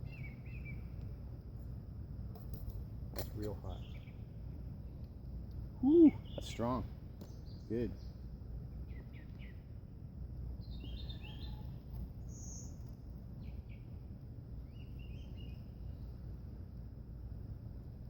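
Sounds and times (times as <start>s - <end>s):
low background rumble: 0.0s - 18.0s
birds chirping: 3.4s - 5.1s, 5.8s - 9.7s, 10.6s - 14.0s
bird trill: 10.6s - 12.8s.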